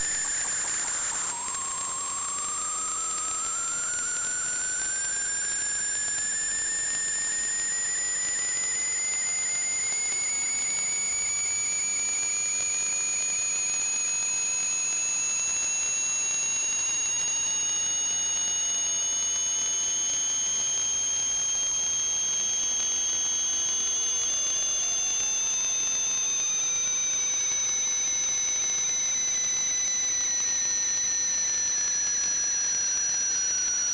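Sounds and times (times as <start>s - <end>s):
high whistling tones: 0.0s - 9.0s.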